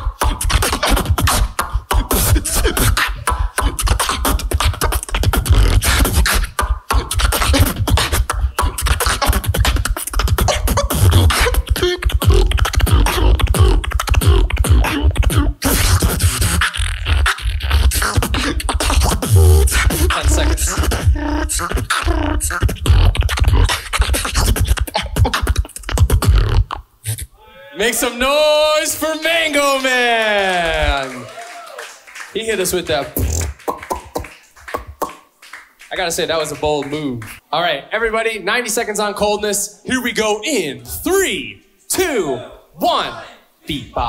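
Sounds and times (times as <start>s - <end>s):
beatboxing through a microphone: 0.0s - 27.3s, 32.4s - 35.3s.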